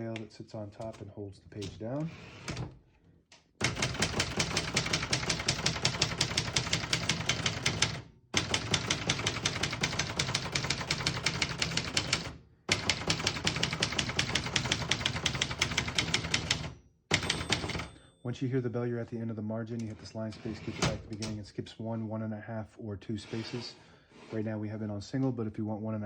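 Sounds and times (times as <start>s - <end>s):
manual typewriter keystrokes: 3.6s - 18.1s.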